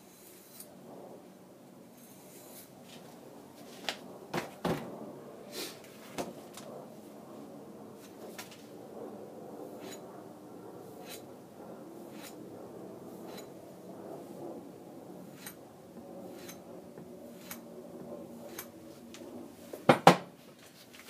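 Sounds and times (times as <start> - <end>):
blade rubbing and scraping: 0.0 - 0.8, 1.9 - 4.0, 9.7 - 10.1, 10.8 - 11.4, 12.0 - 12.4, 13.1 - 13.6, 15.2 - 19.7.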